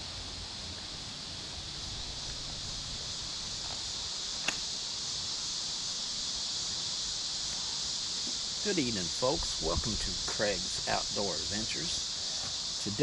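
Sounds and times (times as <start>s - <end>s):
crickets and insects chirping: 0.0s - 13.0s
sharp click: 4.4s - 4.7s.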